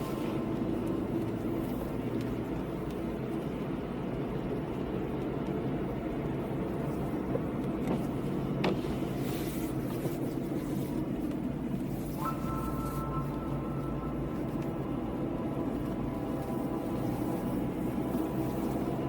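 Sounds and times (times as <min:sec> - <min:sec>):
car driving on wet road: 0:00.0 - 0:19.0
steady high tone: 0:12.2 - 0:15.4.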